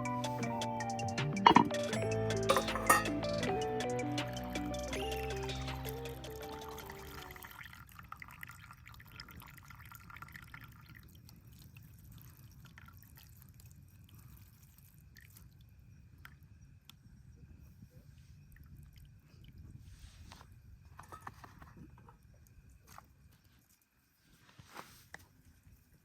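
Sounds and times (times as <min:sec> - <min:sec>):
background music: 0:00.0 - 0:07.4.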